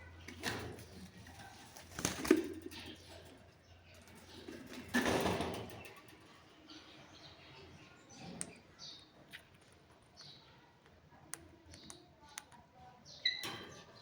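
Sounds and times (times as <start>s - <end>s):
parrot calls and clicks: 9.3s - 12.6s.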